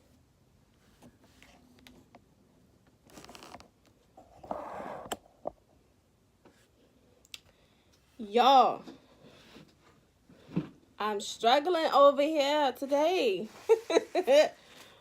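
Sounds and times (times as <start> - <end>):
tripod rustling and scraping: 3.0 - 5.3.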